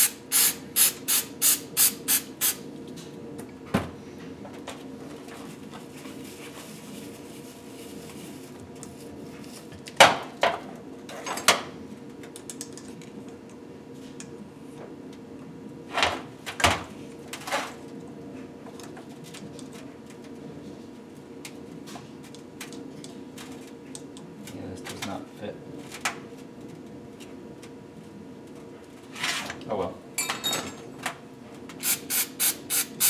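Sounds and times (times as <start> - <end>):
metal tools clunking on workbench: 30.2 - 30.8.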